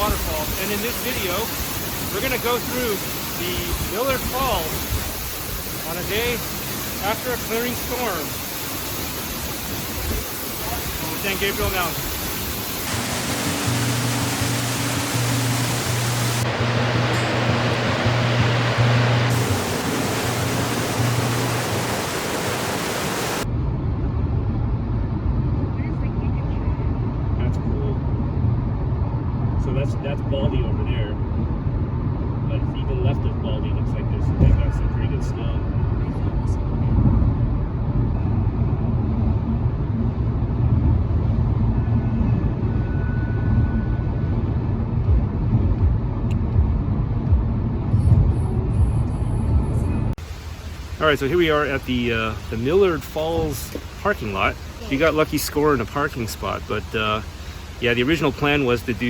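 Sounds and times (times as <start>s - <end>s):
waterfall rushing: 0.0s - 23.5s, 50.2s - 59.0s
low rumble of road noise: 0.0s - 59.0s.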